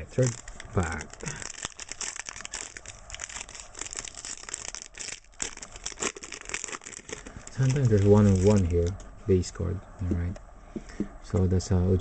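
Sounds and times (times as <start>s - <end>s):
foil wrapper crinkling: 0.0s - 9.0s.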